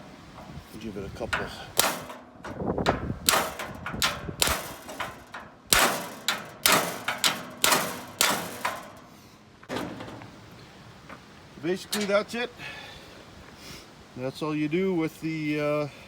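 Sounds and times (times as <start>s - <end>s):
hammer striking metal rivet: 1.3s - 9.8s.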